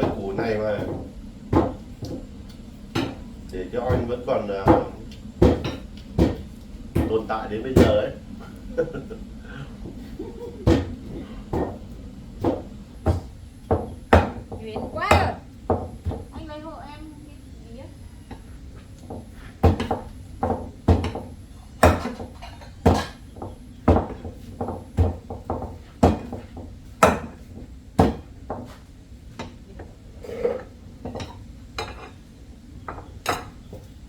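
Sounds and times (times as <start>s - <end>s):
utensil knocking against pot: 3.9s - 8.0s, 19.1s - 27.4s.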